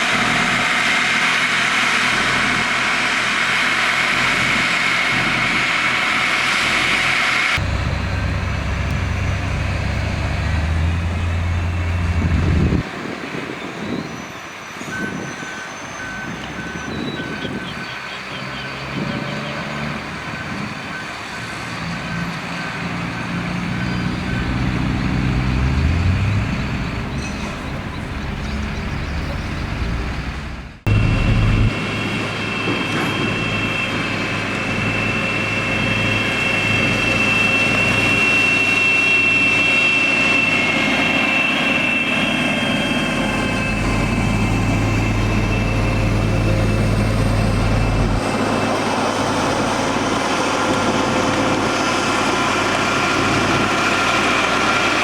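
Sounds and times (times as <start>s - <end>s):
diesel engine: 0.0s - 55.0s
reversing alarm beeping: 14.0s - 29.2s, 30.9s - 48.4s.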